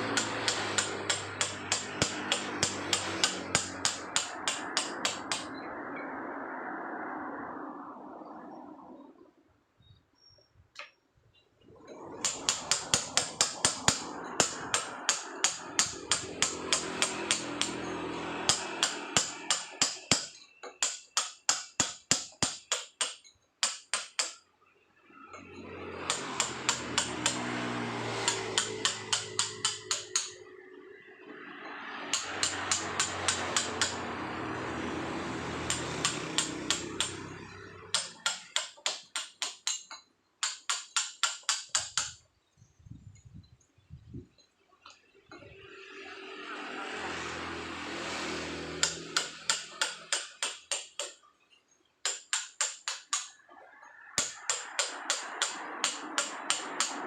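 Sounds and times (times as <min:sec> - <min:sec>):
hammer striking chisel on stone: 0:00.0 - 0:05.5, 0:12.2 - 0:24.4, 0:25.4 - 0:30.5, 0:32.1 - 0:42.2, 0:48.8 - 0:51.2, 0:52.0 - 0:53.4, 0:54.2 - 0:57.0.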